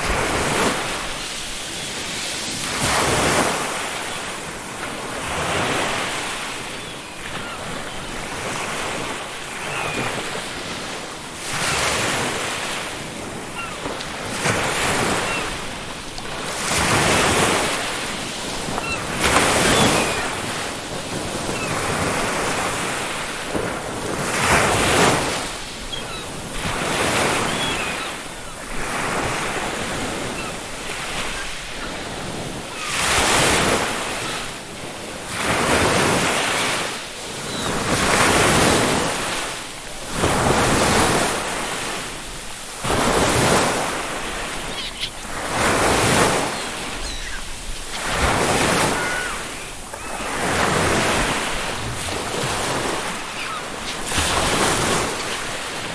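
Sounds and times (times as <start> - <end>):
ocean surf breaking on beach: 0.0 - 55.9
faint seagull calls: 5.6 - 10.5, 13.5 - 15.8, 16.4 - 22.6, 24.8 - 34.4, 37.3 - 38.2, 43.0 - 55.9.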